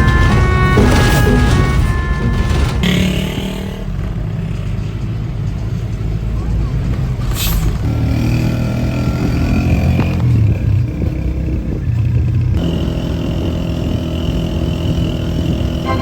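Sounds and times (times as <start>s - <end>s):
bus engine running: 0.0s - 16.0s
brief sharp hiss: 7.3s - 7.8s.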